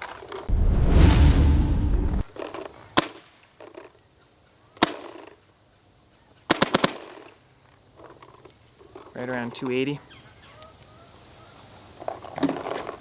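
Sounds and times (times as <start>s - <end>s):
loud rushing noise: 0.5s - 2.3s.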